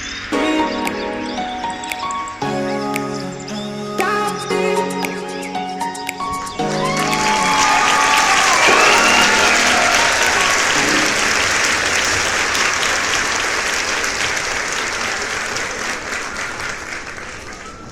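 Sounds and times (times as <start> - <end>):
crowd applauding: 6.2 - 17.9.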